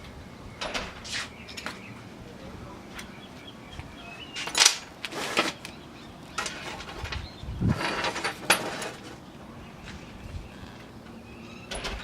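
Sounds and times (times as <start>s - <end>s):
metal tools clattering: 4.4s - 5.6s, 6.4s - 9.2s.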